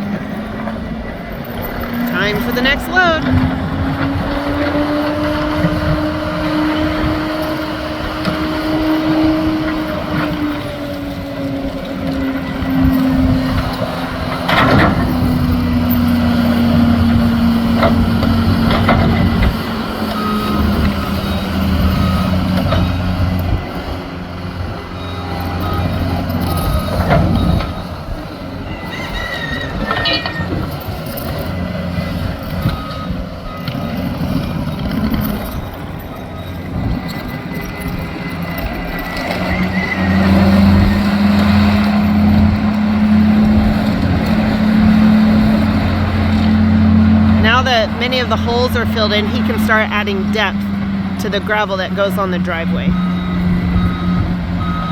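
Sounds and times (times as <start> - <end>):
loader engine revving under load: 0.0 - 54.9
backup alarm beeping: 47.4 - 54.9.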